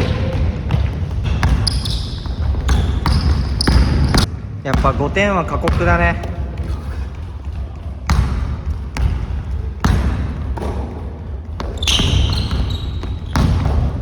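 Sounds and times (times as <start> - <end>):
basketball bouncing on gym floor: 0.0 - 14.0
high shoe squeak: 1.4 - 4.3, 11.6 - 13.6.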